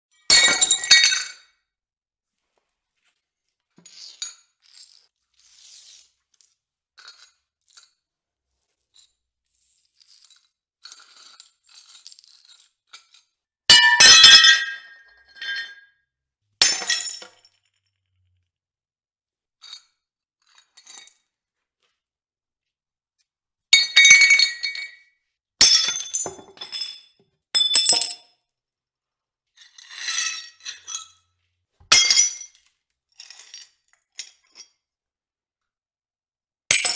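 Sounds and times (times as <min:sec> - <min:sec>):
plates shattering: 0:13.7 - 0:15.8, 0:31.9 - 0:32.5.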